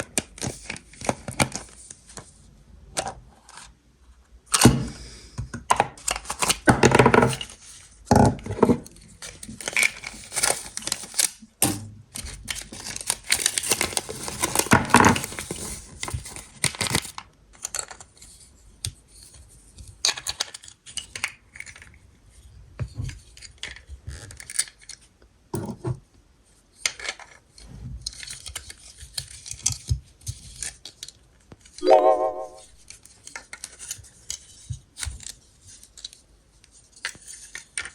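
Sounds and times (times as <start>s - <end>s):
wrapping torn and crinkled: 12.5s - 15.8s.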